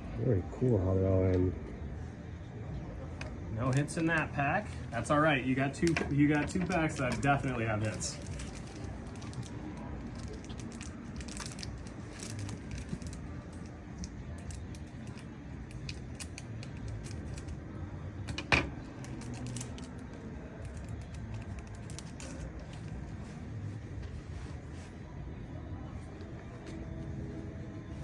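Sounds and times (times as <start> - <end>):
low steady hum: 0.0 - 28.0
trading cards clicking and rustling: 5.5 - 17.6, 18.4 - 23.3.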